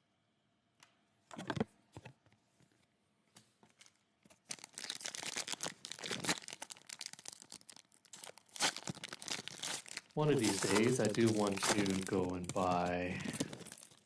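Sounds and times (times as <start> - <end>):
foil wrapper tearing and crinkling: 3.8 - 14.0
handling noises: 10.2 - 14.0.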